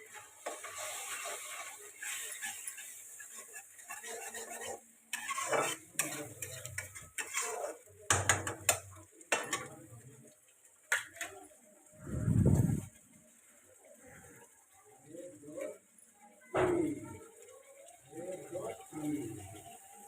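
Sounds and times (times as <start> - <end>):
utensils clinking against cookware: 0.4 - 9.8.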